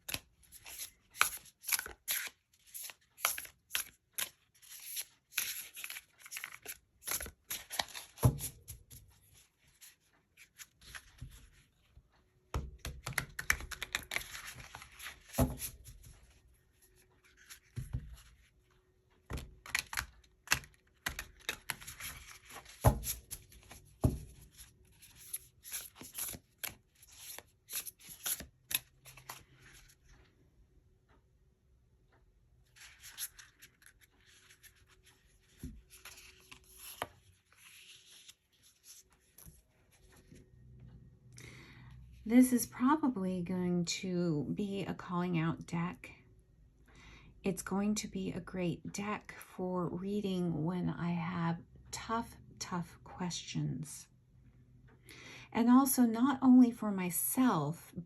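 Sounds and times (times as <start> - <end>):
cards shuffling: 0.0 - 9.0, 12.8 - 16.2, 17.2 - 18.5, 19.3 - 30.0, 32.7 - 40.2.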